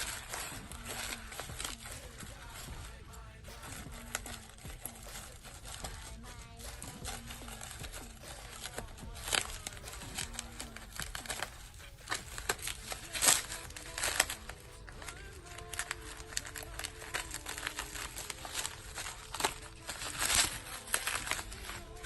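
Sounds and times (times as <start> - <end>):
package crinkling and rustling: 0.0 - 22.0.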